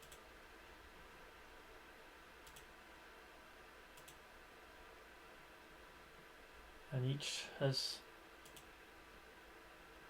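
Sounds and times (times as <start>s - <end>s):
computer mouse clicks: 0.0s - 0.3s, 2.4s - 2.7s, 3.9s - 4.2s, 8.4s - 8.7s
faint room hiss: 0.0s - 10.0s.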